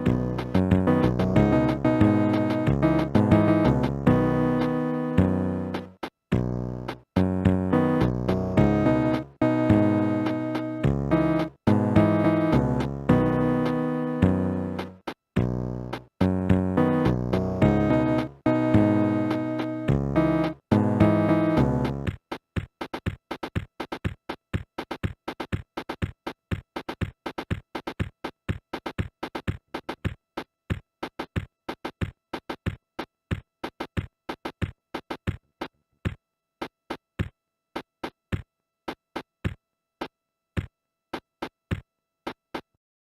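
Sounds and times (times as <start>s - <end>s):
drum machine hits: 0.0s - 4.8s
faint electronic tone: 16.8s - 21.9s.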